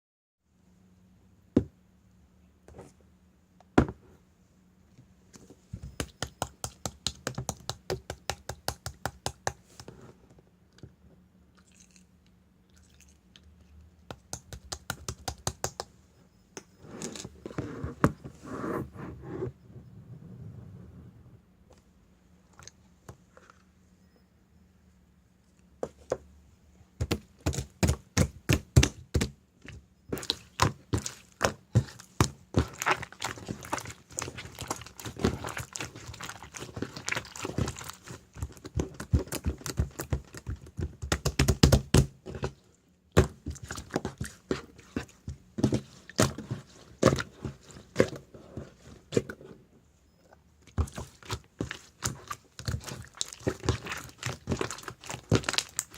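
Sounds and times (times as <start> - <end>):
slime squished by hand: 30.1 - 42.5, 50.7 - 55.9.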